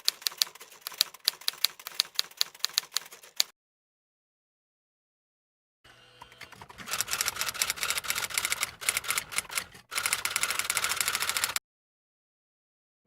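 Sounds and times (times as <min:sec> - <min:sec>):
typewriter clicking: 0:00.0 - 0:03.5, 0:06.5 - 0:11.6.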